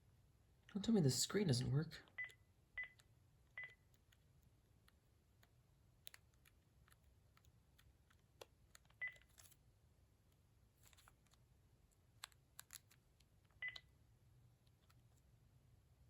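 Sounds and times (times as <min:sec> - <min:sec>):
phone keypad beeps: 0:02.2 - 0:03.0, 0:03.6 - 0:03.8, 0:09.0 - 0:09.2, 0:13.6 - 0:13.9.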